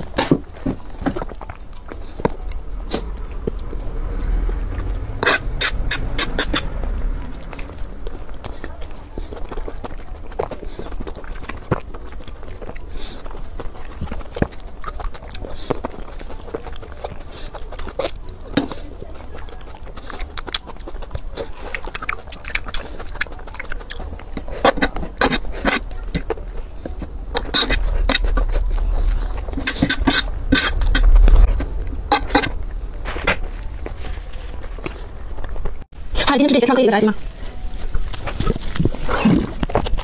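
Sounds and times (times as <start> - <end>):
chewing and biting: 0.0 - 35.9, 36.9 - 40.0
low rumble: 0.9 - 10.1, 25.4 - 36.2.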